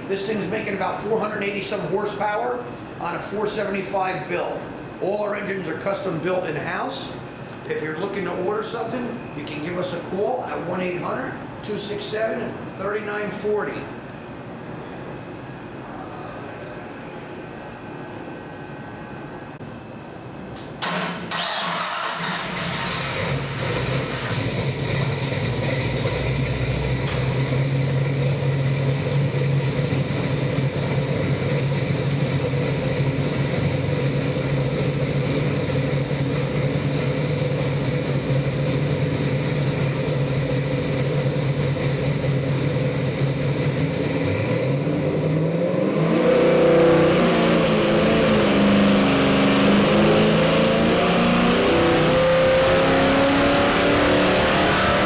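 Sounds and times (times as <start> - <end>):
engine idling and revving: 21.3 - 55.0.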